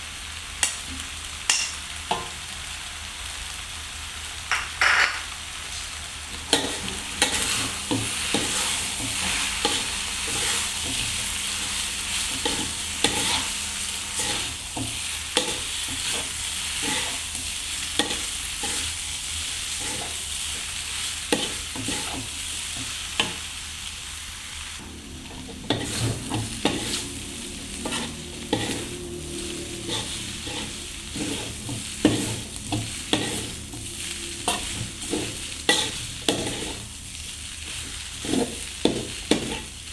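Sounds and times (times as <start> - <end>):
noodles sizzling in a frying pan: 0.0 - 39.9
spatula scraping a pan: 6.4 - 23.6, 25.5 - 39.9.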